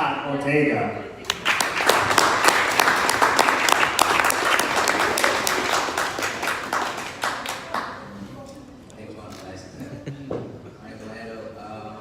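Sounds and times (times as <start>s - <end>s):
audience applauding: 1.3s - 8.2s.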